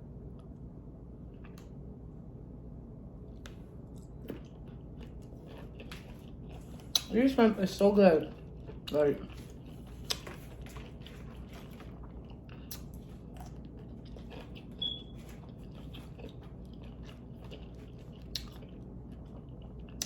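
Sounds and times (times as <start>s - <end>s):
chewing and biting prawns: 4.0s - 7.2s, 8.3s - 20.0s.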